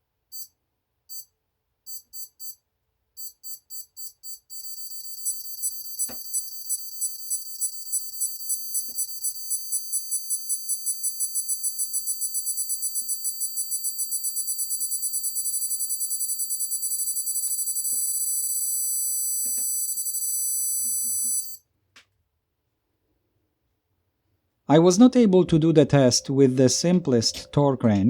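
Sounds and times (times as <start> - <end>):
torque wrench beeping: 3.2 - 21.6.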